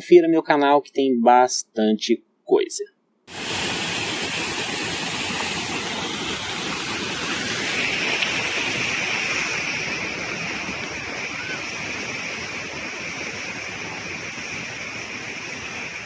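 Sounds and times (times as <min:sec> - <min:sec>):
fast-flowing water rushing: 0:03.3 - 0:16.0.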